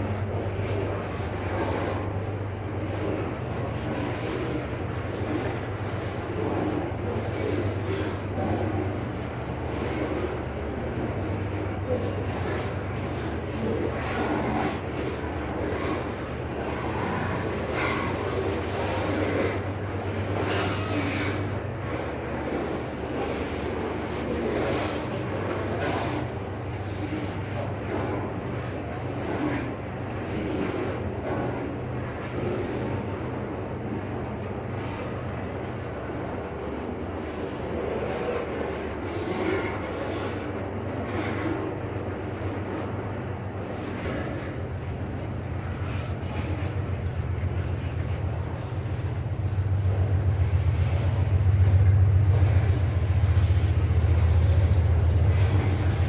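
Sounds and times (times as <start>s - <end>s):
locomotive engine hum: 0.0s - 56.0s
wheels rumbling on rail: 0.0s - 56.0s
low diesel drone: 39.8s - 56.0s.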